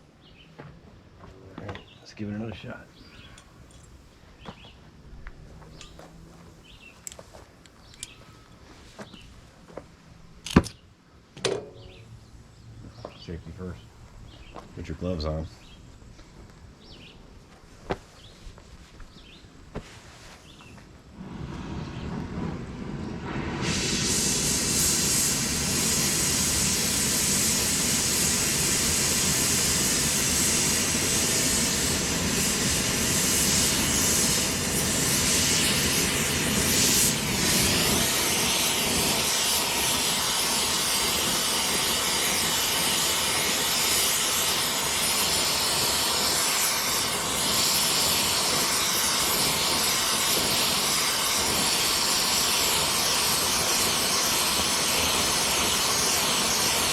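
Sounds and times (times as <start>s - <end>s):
gas torch hissing: 18.2s - 56.9s
low torch rumble: 21.0s - 56.9s.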